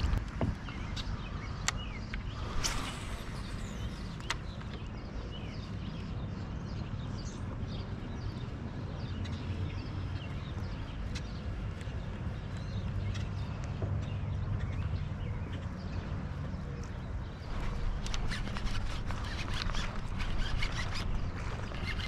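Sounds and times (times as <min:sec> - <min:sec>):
steady low rumble: 0:00.0 - 0:05.5
bird chirps: 0:00.6 - 0:11.4.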